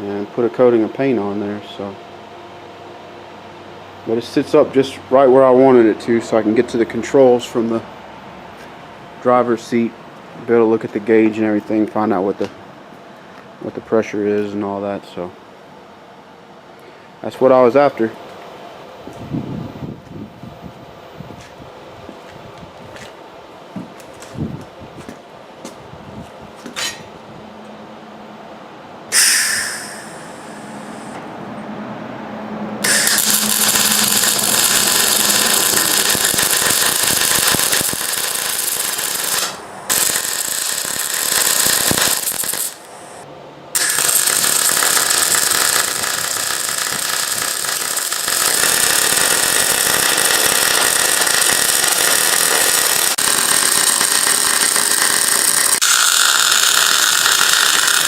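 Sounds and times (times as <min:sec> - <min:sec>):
angle grinder grinding steel: 0:32.8 - 0:42.9, 0:43.8 - 0:58.0.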